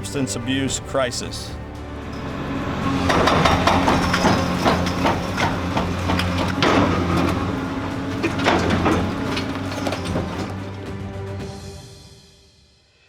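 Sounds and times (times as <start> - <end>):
diesel engine running: 0.0 - 11.1
crunching and cracking crashes: 2.8 - 11.1.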